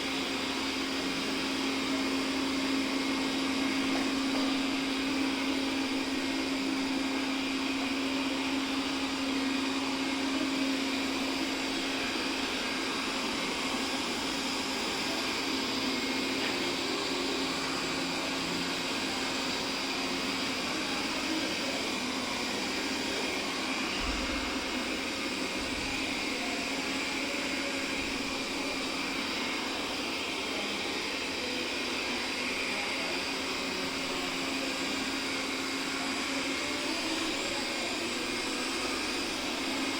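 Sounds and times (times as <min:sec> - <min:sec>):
robot vacuum cleaner whirring: 0:00.0 - 0:39.9.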